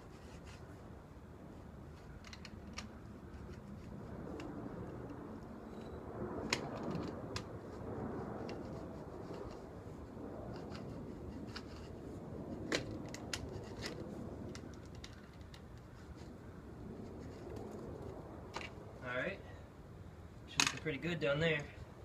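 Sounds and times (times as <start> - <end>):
steady low hiss: 0.0 - 22.0
wire mesh clicks and scrapes: 1.6 - 9.9, 10.5 - 16.4.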